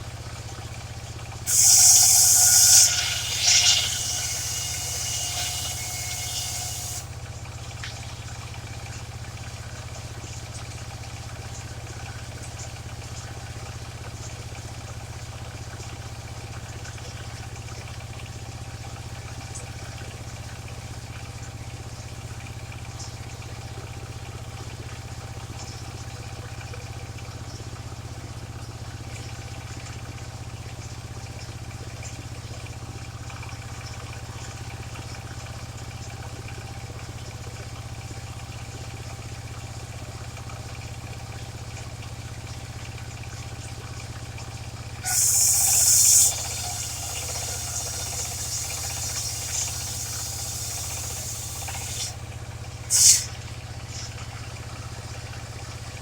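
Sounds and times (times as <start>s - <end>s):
sawmill engine running: 1.4s - 7.2s, 45.0s - 55.1s
saw blade cutting log: 1.5s - 7.1s, 45.0s - 52.2s, 52.9s - 53.4s.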